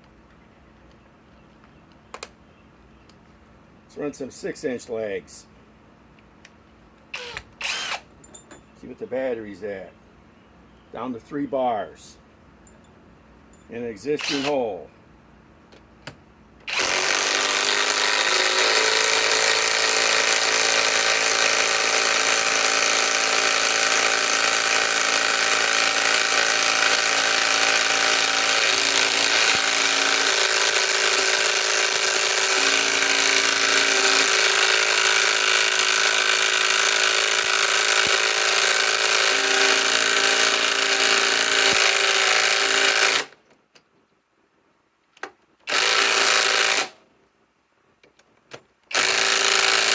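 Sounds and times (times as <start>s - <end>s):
impact wrench driving screw: 7.2s - 8.0s, 14.2s - 14.5s, 16.6s - 43.3s, 45.7s - 47.0s, 48.9s - 49.9s.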